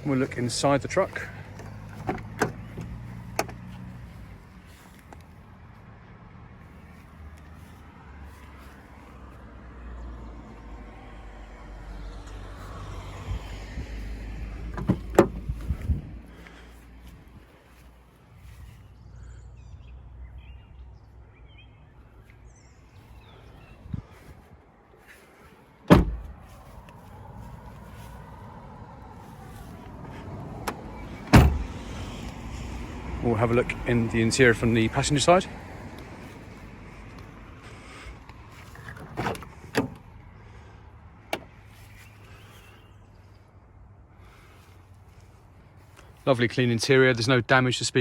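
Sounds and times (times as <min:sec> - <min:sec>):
car door latch clunk: 0:02.0 - 0:03.6, 0:14.7 - 0:15.5, 0:25.9 - 0:26.3, 0:30.6 - 0:31.8, 0:38.9 - 0:40.0
loud thump: 0:25.9 - 0:26.4, 0:31.3 - 0:31.7.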